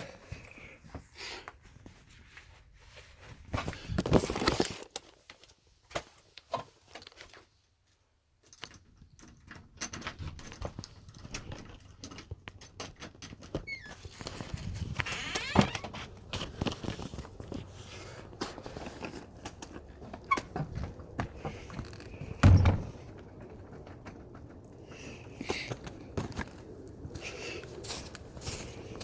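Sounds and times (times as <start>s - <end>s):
rustling and clicking handling noises: 0.3s - 29.0s.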